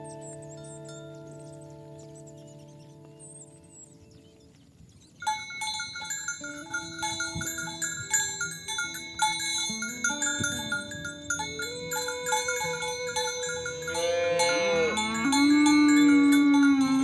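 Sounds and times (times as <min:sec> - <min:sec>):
metal bells ringing: 0:00.0 - 0:01.9, 0:05.2 - 0:17.0.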